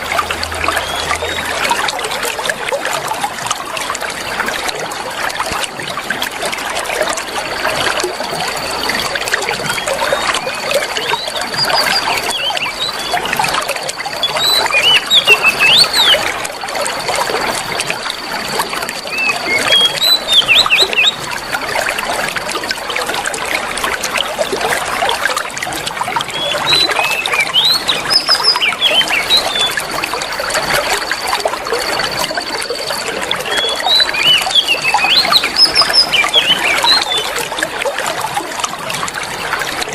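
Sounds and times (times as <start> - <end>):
water trickling: 0.0 - 39.9
small birds chirping: 9.8 - 16.4, 18.9 - 21.2, 26.3 - 29.9, 32.4 - 37.5.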